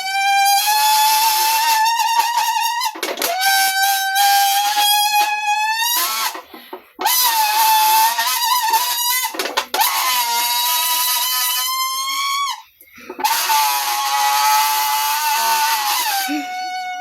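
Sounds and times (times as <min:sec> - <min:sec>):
person making high-pitched vocal notes: 0:15.3 - 0:17.0.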